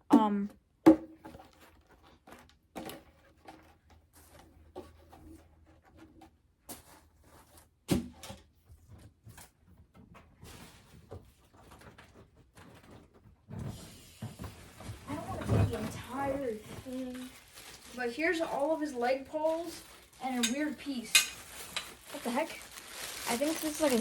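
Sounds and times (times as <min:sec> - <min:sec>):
cardboard rustling: 0:10.4 - 0:24.0.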